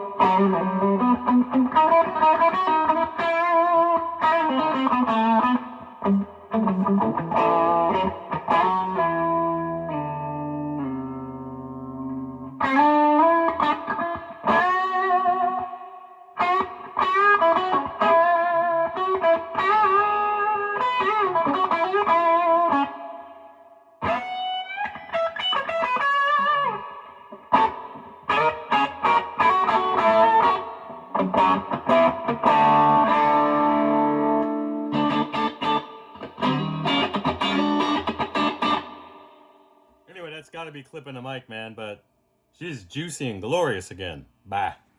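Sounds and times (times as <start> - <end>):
overdriven electric guitar lead: 0.0 - 23.3, 24.0 - 39.3.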